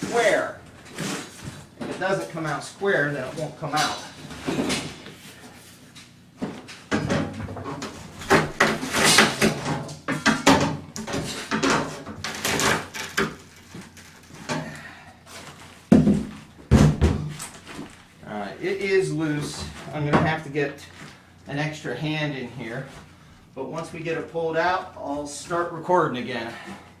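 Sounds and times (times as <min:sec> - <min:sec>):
bathtub scraping and knocking: 0:06.4 - 0:14.8, 0:15.4 - 0:17.9
heavy thumps: 0:15.9 - 0:17.9.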